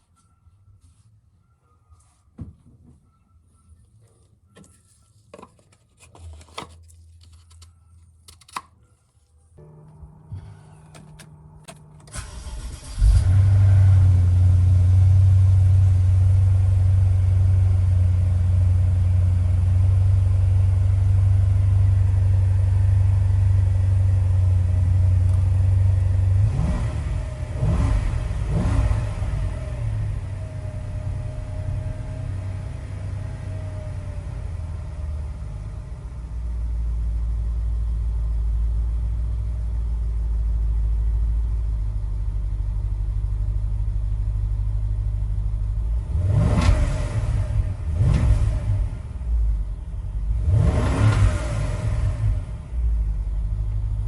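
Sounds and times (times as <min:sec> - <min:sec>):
clicks and handling sounds: 0:03.8 - 0:12.2
low hum: 0:09.4 - 0:27.6
car engine starting and idling: 0:09.5 - 0:54.0.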